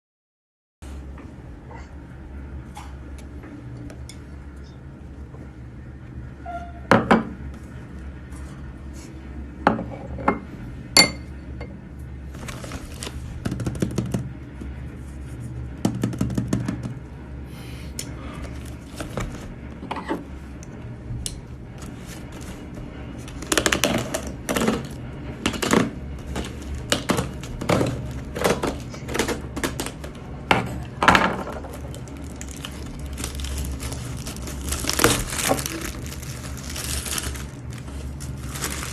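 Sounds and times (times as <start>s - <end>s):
plastic containers clattering: 23.2s - 38.9s.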